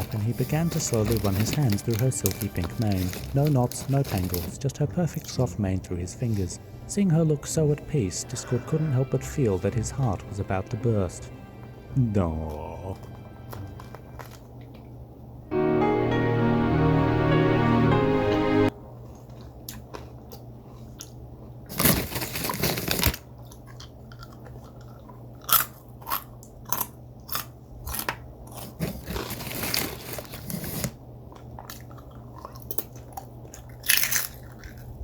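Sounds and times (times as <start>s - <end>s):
crunchy food chewing: 12.5s - 14.9s, 19.0s - 35.0s.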